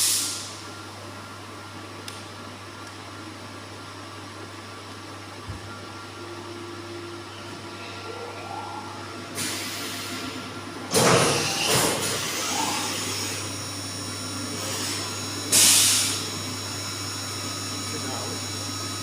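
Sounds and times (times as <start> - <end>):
milling machine humming: 3.2 - 19.0
loud hissing bursts: 15.5 - 16.3.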